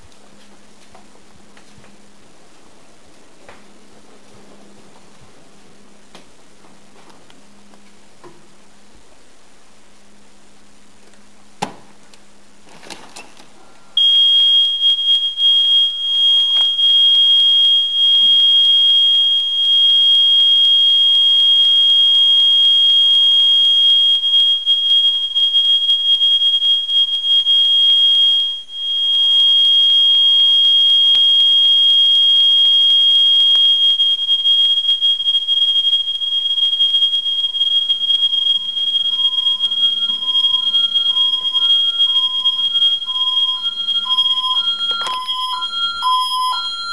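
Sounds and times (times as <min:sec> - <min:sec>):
burglar alarm siren: 0:14.0 - 0:46.9.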